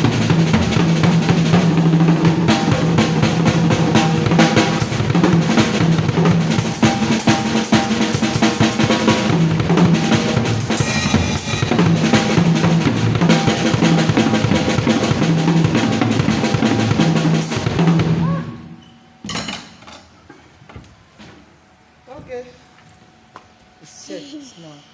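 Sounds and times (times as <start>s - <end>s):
drum kit playing fast: 0.0s - 18.4s.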